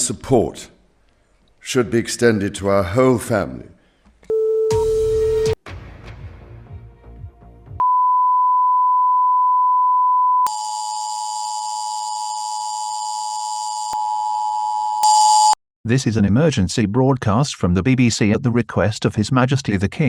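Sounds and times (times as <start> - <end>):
pure steady test tone: 10.5 - 14.3, 15.0 - 15.6
buzzy emergency attention tone: 10.5 - 15.6.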